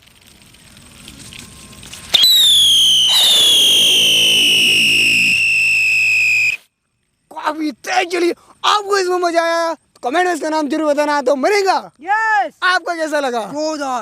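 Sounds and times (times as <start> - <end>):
firework hissing: 0.0 - 6.7
firework shrill whistle: 1.1 - 6.7.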